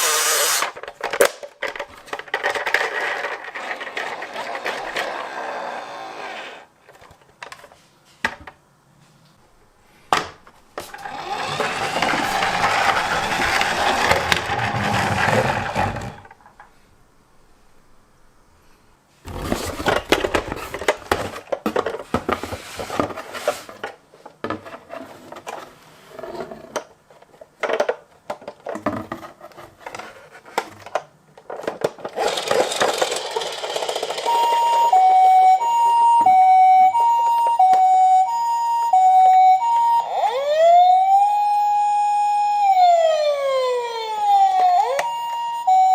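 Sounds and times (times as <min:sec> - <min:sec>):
toy car motor whirring: 0:00.0 - 0:00.8, 0:02.8 - 0:06.7, 0:10.9 - 0:16.3, 0:32.1 - 0:35.0
electronic ambulance siren: 0:10.9 - 0:16.2, 0:33.5 - 0:45.9
plastic clicks and rattles: 0:26.7 - 0:29.2.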